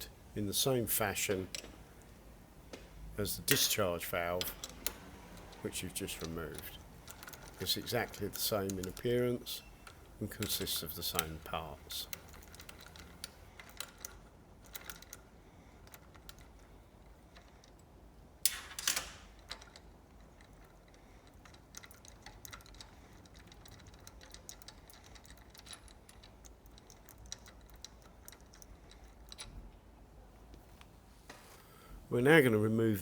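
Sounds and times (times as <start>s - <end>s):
light clicks and taps: 1.3s - 15.2s
louder clatter of parts: 18.4s - 20.4s.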